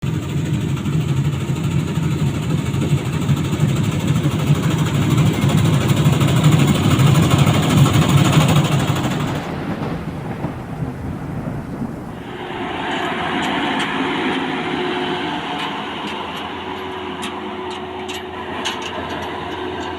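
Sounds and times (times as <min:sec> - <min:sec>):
combine harvester rumbling: 0:00.6 - 0:17.3.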